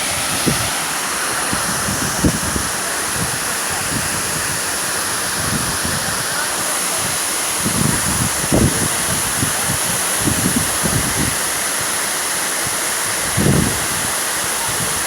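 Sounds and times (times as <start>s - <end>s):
wind thumps on microphone: 0.0s - 4.6s, 7.0s - 11.4s, 13.3s - 13.9s
waterfall rushing: 0.0s - 15.0s.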